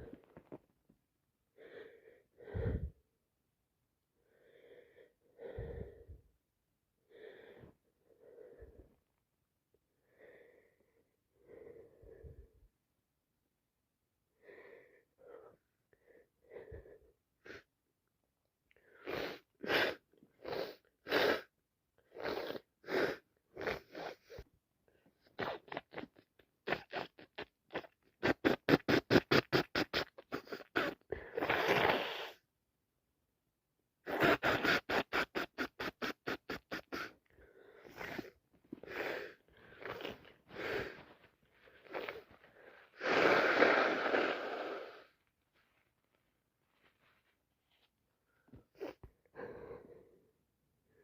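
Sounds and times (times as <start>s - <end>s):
congested nose sniffing: 19.0s - 21.5s, 22.1s - 24.4s, 27.8s - 32.4s, 34.0s - 45.2s.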